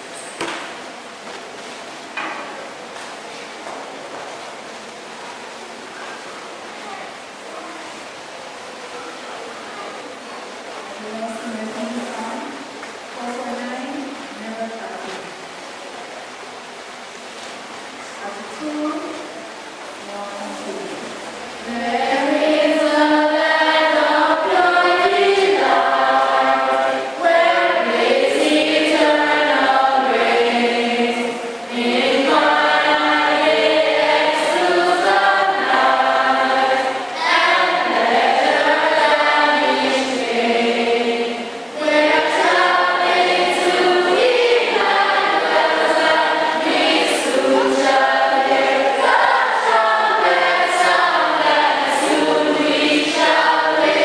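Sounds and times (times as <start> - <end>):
many voices singing together: 20.5 - 54.0.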